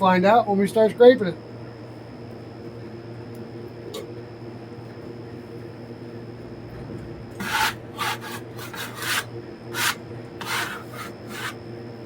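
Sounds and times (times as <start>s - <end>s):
rasping scrapes of wood and bark: 7.4s - 11.6s.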